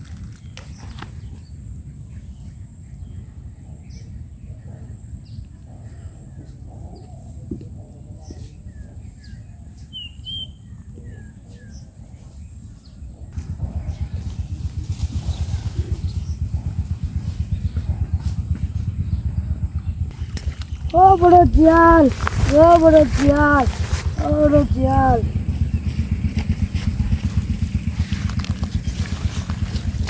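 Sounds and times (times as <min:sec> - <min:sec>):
birds chirping: 0:00.5 - 0:30.0
steady low rumble: 0:10.6 - 0:30.0.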